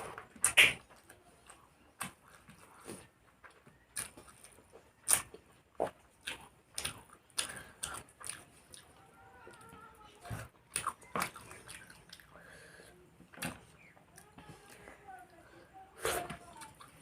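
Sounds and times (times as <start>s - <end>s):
chewing and lip-smacking: 0.3s - 12.5s.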